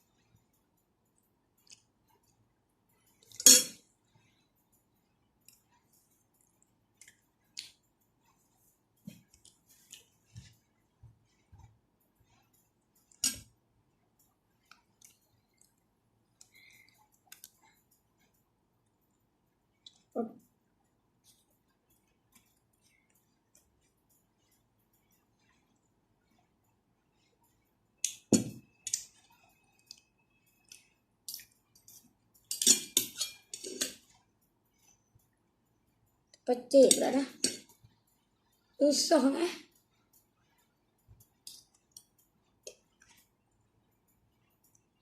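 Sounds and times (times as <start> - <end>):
cutlery clinking against bowl: 3.2 - 3.9, 31.3 - 34.1, 36.9 - 37.8.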